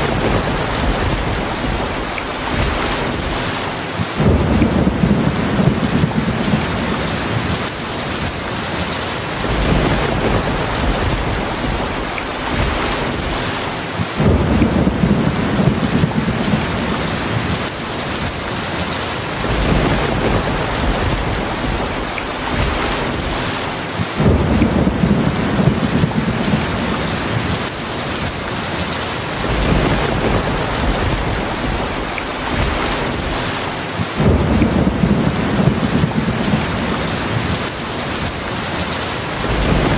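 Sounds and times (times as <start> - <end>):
thunder rolling: 0.0 - 7.6, 9.4 - 18.3, 19.4 - 27.7, 29.3 - 38.3, 39.3 - 39.9
heavy rain pouring: 0.0 - 39.9.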